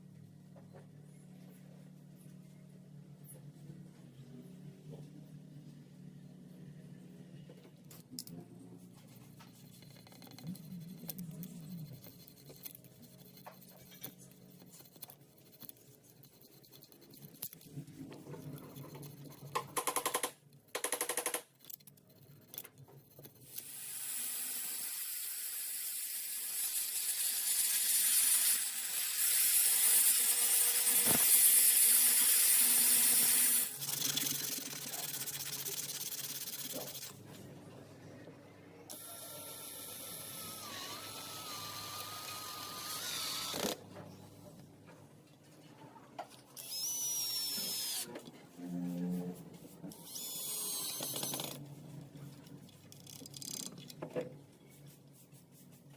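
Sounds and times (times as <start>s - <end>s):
power drill running: 38.9s - 43.8s, 46.6s - 48.1s, 50.0s - 51.6s.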